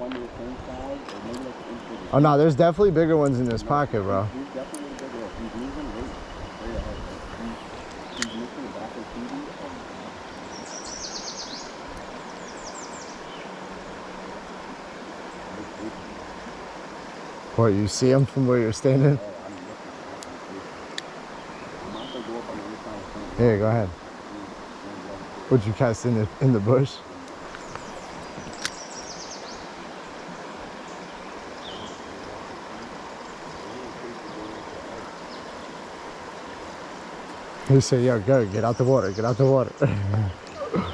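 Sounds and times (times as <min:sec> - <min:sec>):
songbird trilling: 0:00.0 - 0:23.2, 0:24.4 - 0:40.9
stream rushing: 0:00.0 - 0:40.9
sharp click: 0:08.2 - 0:08.4, 0:27.4 - 0:28.8.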